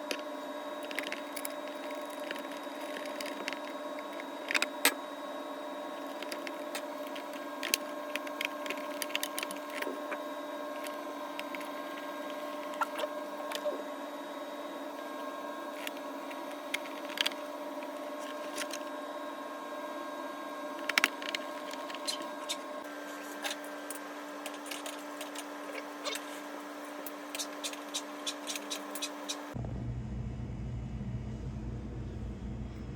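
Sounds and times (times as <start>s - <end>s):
steady background hum: 0.0s - 32.9s
small hard parts clicking: 6.0s - 9.9s.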